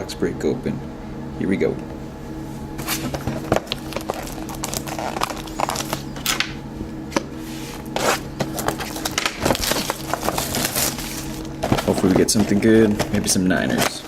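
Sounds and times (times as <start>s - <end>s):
steady low hum: 0.0s - 14.0s
cardboard and wrapper crinkling: 2.8s - 6.5s, 7.9s - 14.0s.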